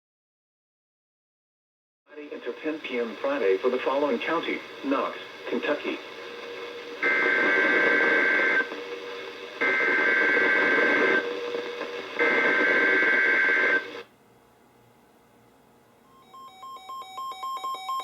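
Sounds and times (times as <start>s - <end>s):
radio hiss: 2.1s - 14.1s
buzzy two-tone data bursts: 6.9s - 8.7s.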